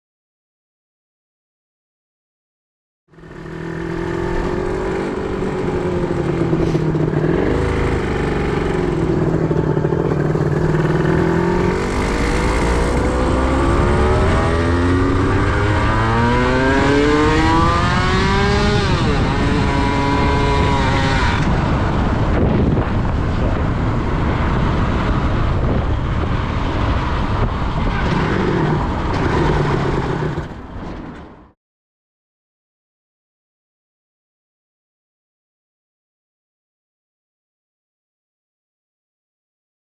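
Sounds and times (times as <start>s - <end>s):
engine seizing and winding down: 3.1s - 21.6s, 28.0s - 30.7s
motorcycle engine revving: 3.1s - 30.8s
rough rushing noise: 3.2s - 31.5s.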